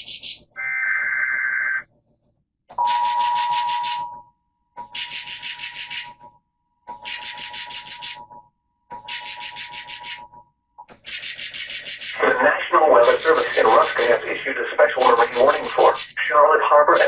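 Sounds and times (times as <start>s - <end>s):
steady beep-like tone: 2.8s - 6.2s.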